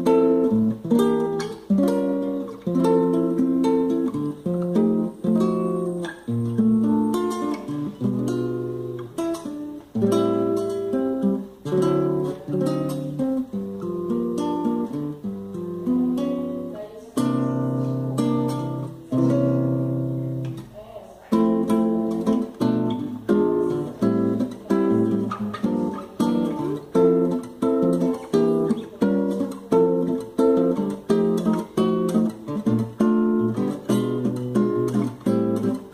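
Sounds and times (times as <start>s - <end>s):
acoustic guitar chords: 0.0s - 35.9s.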